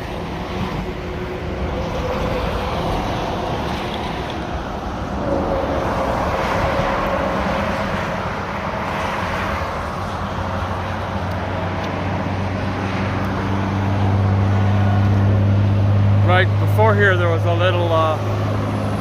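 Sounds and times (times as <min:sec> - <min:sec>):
heavy vehicle engine hum: 0:00.0 - 0:19.0
highway traffic rushing: 0:00.0 - 0:19.0.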